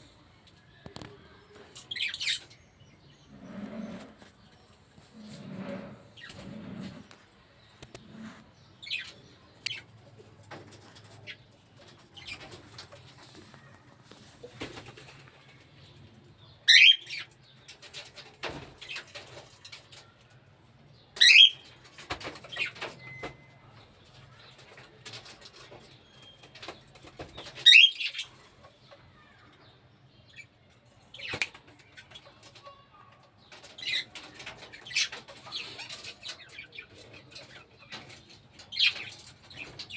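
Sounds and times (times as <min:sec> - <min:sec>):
wings fluttering: 0:11.9 - 0:15.5.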